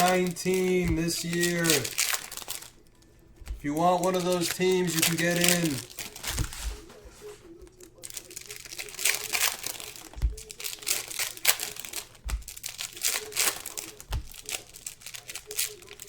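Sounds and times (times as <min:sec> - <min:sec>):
dull thumps: 0:00.0 - 0:08.2, 0:09.0 - 0:15.2
packaging crinkling: 0:00.0 - 0:16.0.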